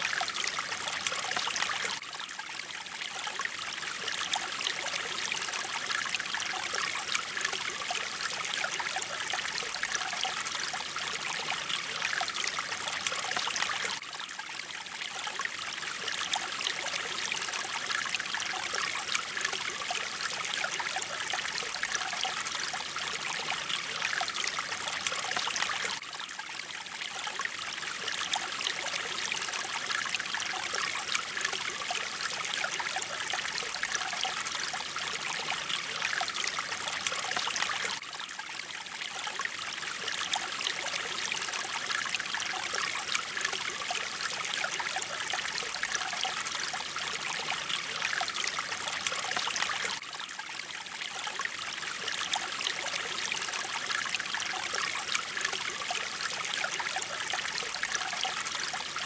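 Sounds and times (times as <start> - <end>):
stream water trickling: 0.0 - 59.0.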